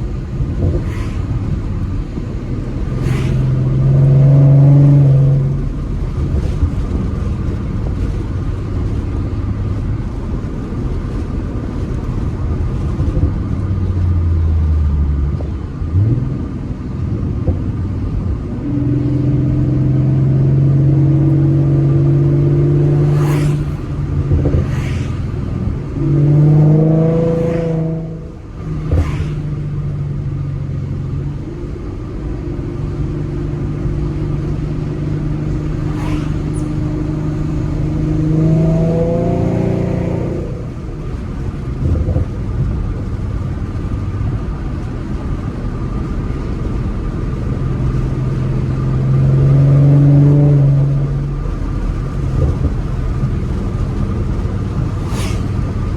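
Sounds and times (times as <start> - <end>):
car exhaust accelerating: 0.0 - 55.9
sharp exhaust pops: 21.2 - 29.8, 49.9 - 55.9.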